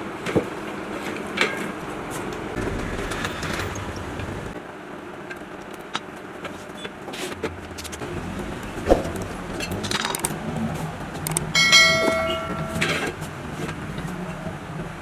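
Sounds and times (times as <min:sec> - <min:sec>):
small metal things clicking: 0:05.3 - 0:14.1
short metallic ring: 0:11.6 - 0:13.1.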